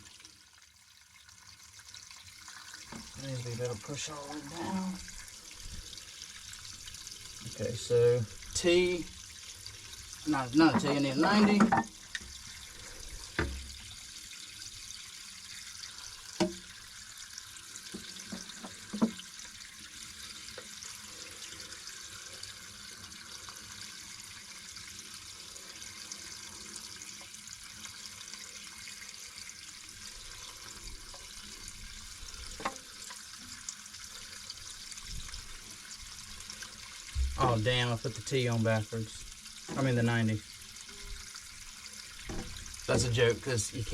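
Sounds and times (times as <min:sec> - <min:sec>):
water rushing and splashing: 0:42.2 - 0:43.9.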